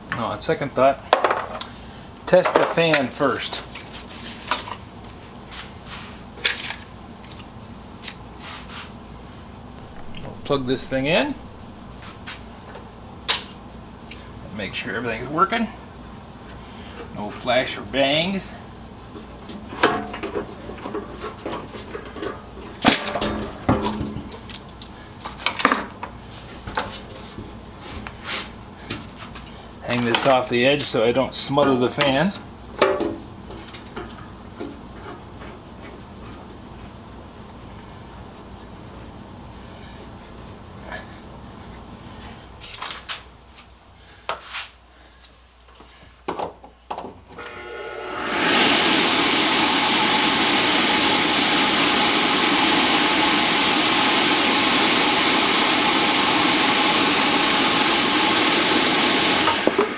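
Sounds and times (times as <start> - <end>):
faint hum: 9.0 - 20.1
blower motor humming: 9.6 - 13.2, 47.3 - 59.9.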